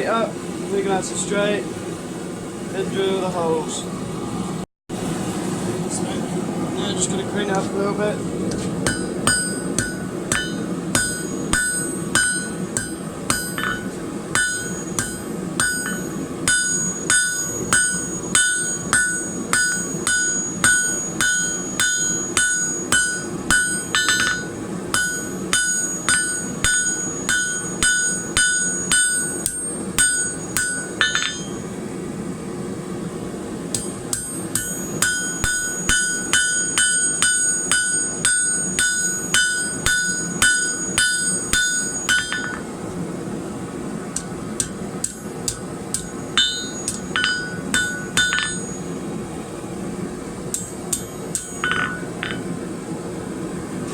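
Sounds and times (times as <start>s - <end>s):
hammer striking steel on anvil: 8.5s - 31.6s, 33.7s - 42.8s, 44.2s - 48.9s, 50.5s - 52.6s.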